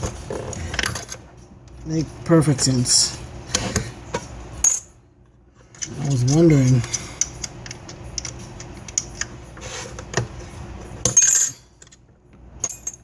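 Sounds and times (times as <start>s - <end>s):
metal tools clinking: 5.8s - 9.2s, 11.0s - 12.0s, 12.6s - 13.0s.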